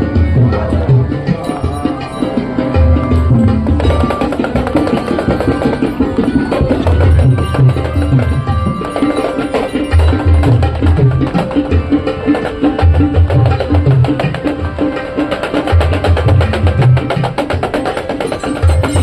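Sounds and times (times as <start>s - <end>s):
low drum beats: 0.0s - 19.0s
rapid percussion strikes: 0.0s - 19.0s.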